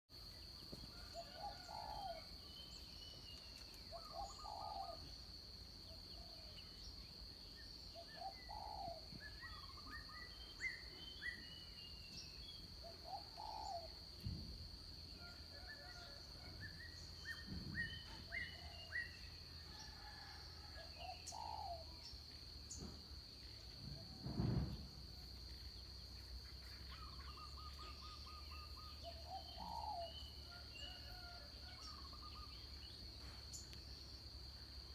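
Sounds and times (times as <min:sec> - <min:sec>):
birds calling: 0:03.4 - 0:05.1, 0:08.0 - 0:13.9, 0:26.7 - 0:30.3
low thump: 0:14.2 - 0:14.8, 0:17.4 - 0:18.0, 0:23.8 - 0:25.2
higher bird chirps: 0:26.7 - 0:33.8.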